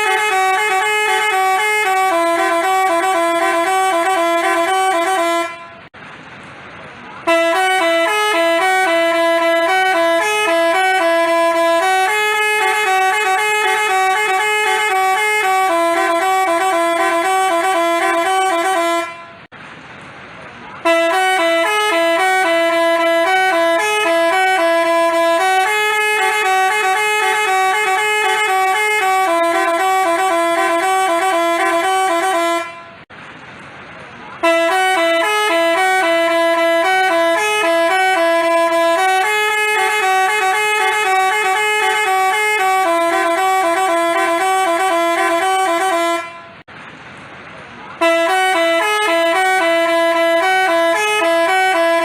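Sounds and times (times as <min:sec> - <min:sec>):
bus horn melody: 0:00.0 - 0:06.0, 0:07.2 - 0:19.5, 0:20.8 - 0:33.1, 0:34.4 - 0:46.7, 0:48.0 - 0:52.0.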